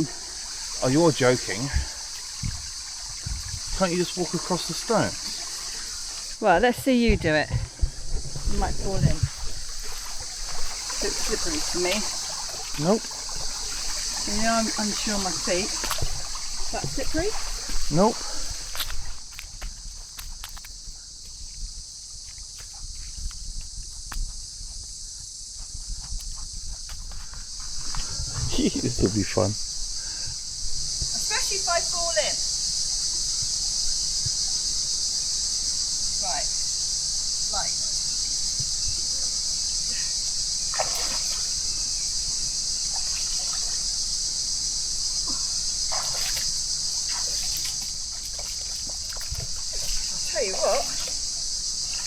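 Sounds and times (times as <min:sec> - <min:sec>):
creek water trickling: 0:00.0 - 0:24.0, 0:26.2 - 0:52.0
insects chorus: 0:00.0 - 0:52.0
footsteps on stones: 0:07.6 - 0:25.0, 0:47.2 - 0:51.3
feet splashing in water: 0:08.5 - 0:20.7, 0:40.7 - 0:41.7, 0:42.9 - 0:43.9, 0:45.8 - 0:52.0.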